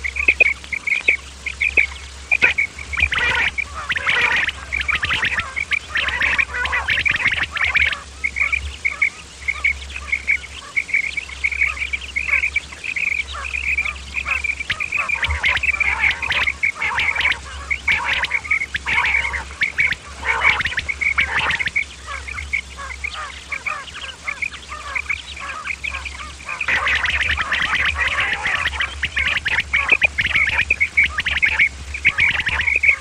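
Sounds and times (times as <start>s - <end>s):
quail calling: 0.0s - 33.0s
steady low hum: 0.0s - 33.0s.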